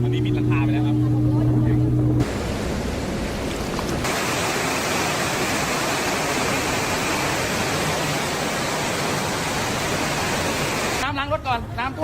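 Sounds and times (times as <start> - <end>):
flowing water rushing: 2.2 - 11.0.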